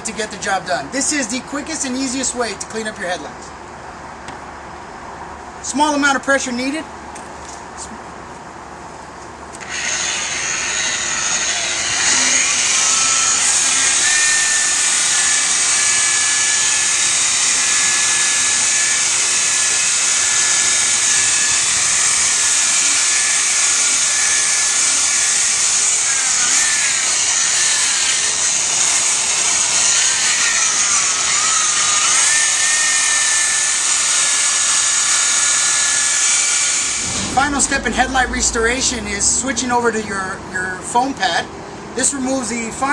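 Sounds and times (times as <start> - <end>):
polisher motor whining: 9.6 - 13.6.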